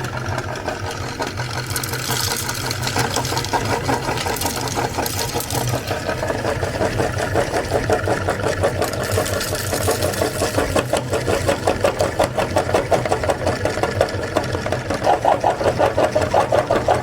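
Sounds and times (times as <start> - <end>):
meat grinder motor humming: 0.0 - 17.0
cookies crunching in grinder: 0.8 - 17.0.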